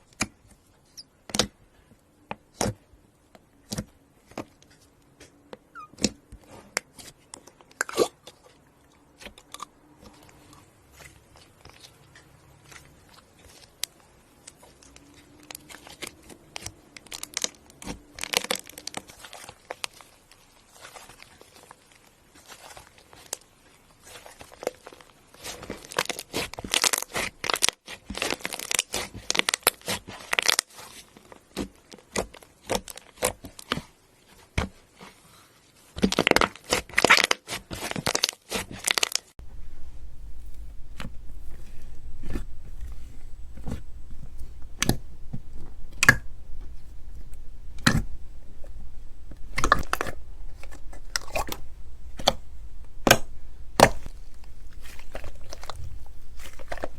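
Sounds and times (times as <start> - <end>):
slime crunching and crackling: 6.0 - 33.9, 34.6 - 56.9
low steady hum: 39.4 - 56.9.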